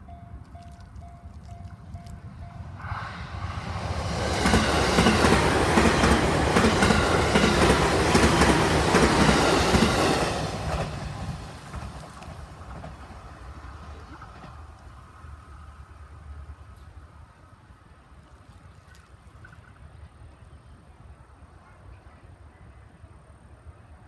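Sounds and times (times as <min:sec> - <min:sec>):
train wheels clacking over rail joints: 0:04.4 - 0:14.7.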